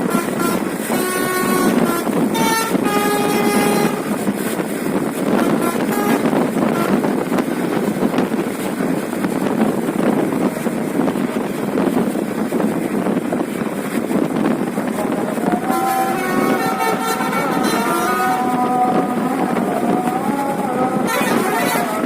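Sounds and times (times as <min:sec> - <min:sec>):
musical horn playing a tune: 0:00.0 - 0:04.2, 0:05.3 - 0:07.0, 0:15.0 - 0:19.5, 0:20.9 - 0:22.0
bus engine running: 0:00.0 - 0:22.0.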